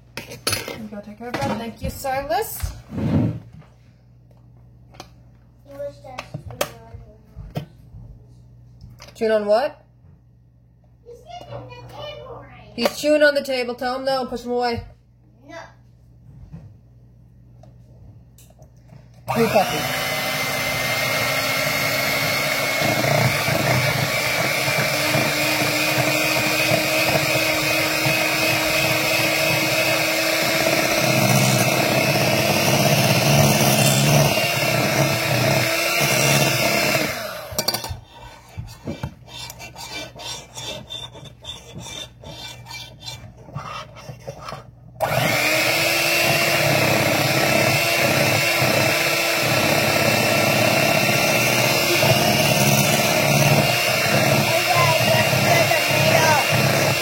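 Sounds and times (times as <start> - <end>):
electric hand mixer running: 19.2 - 41.0, 45.0 - 57.0.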